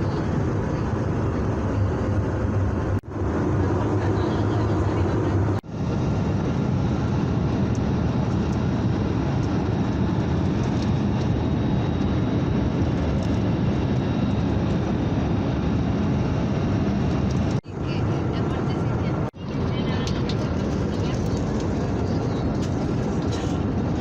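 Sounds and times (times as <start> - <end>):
jet engine and airflow noise: 0.0 - 24.0.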